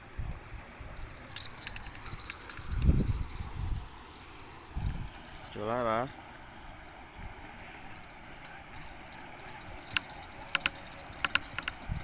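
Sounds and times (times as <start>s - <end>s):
insects chirping: 0.6s - 12.0s
sharp clicks: 9.9s - 11.9s.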